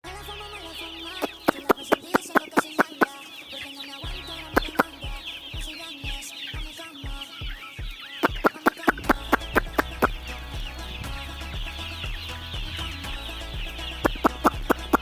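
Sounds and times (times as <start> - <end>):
chickens chirping and clucking: 0.1 - 15.0
music with drum beat: 4.1 - 15.0.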